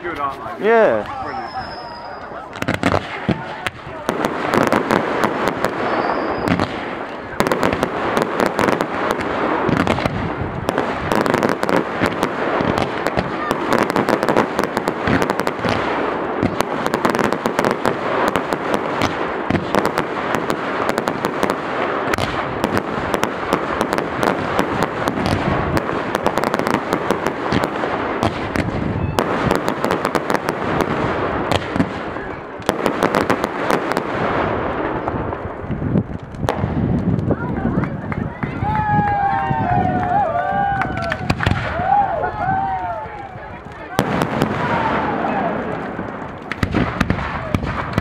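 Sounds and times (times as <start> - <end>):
fireworks crackling and popping: 0.0 - 48.0
heavy firework bangs: 0.6 - 48.0.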